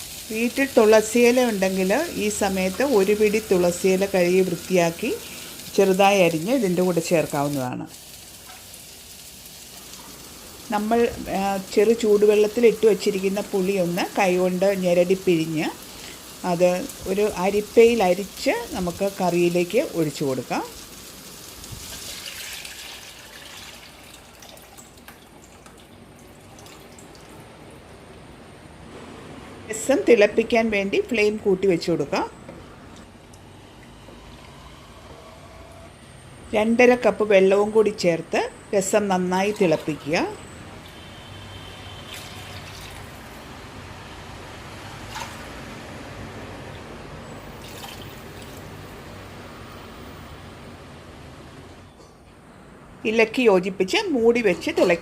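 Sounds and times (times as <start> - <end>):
liquid hissing in a pot: 0.0 - 24.2
dripping: 0.0 - 28.0, 41.9 - 43.4, 45.0 - 45.5, 47.5 - 49.2
liquid pouring and dripping: 20.7 - 28.0, 42.1 - 43.4, 47.6 - 48.8.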